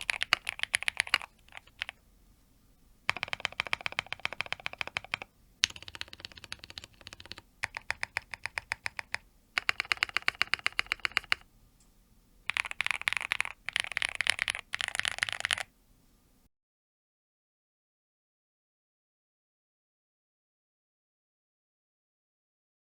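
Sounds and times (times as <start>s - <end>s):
mechanical keyboard typing: 0.0s - 2.0s, 3.1s - 11.4s, 12.5s - 15.7s.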